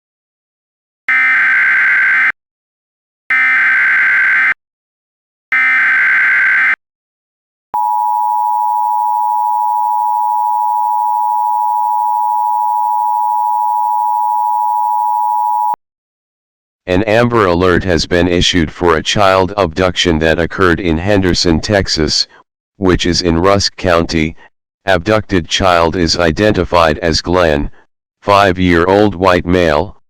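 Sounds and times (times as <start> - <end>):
data tone bursts: 7.8 - 15.8
two-tone attention signal: 7.8 - 15.8.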